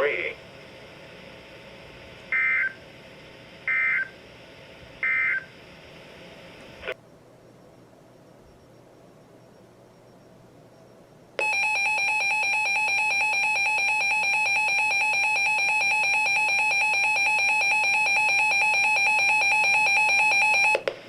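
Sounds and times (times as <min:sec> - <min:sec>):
two-tone alarm tone: 0:02.3 - 0:02.8, 0:03.7 - 0:04.1, 0:05.0 - 0:05.5, 0:11.4 - 0:20.8.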